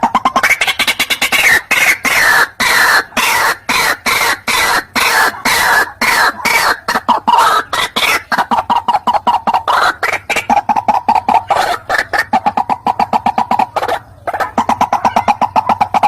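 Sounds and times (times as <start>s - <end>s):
waterhen calling harsh notes: 0.0s - 16.0s.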